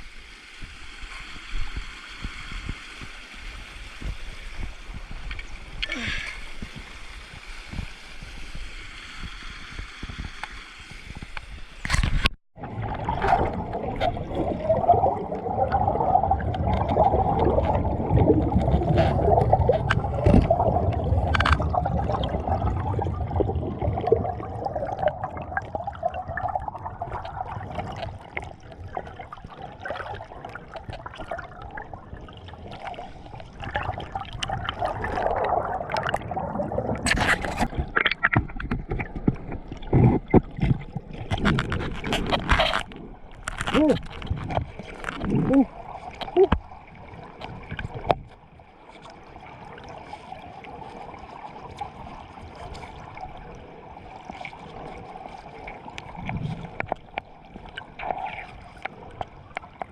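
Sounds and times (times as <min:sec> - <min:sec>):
muffled underwater gurgling: 0:12.6 - 0:48.2.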